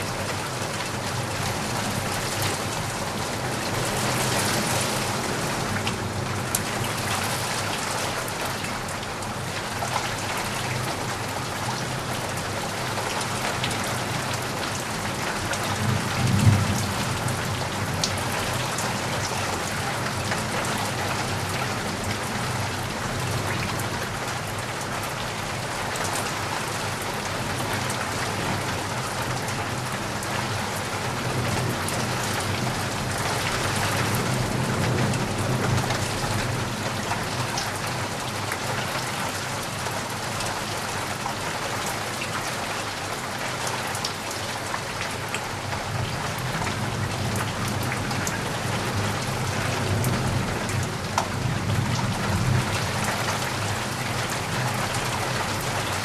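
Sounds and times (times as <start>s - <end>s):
steady rain falling: 0.0s - 56.0s.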